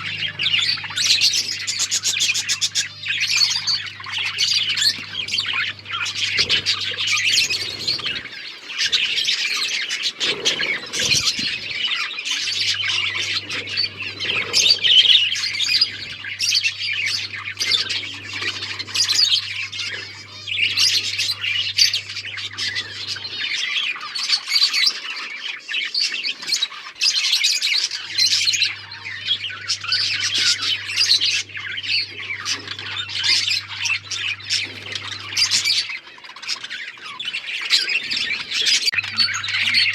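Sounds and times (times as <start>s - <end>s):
faint low hum: 0.0s - 25.6s, 27.8s - 39.9s
budgies chattering and squawking: 0.0s - 39.9s.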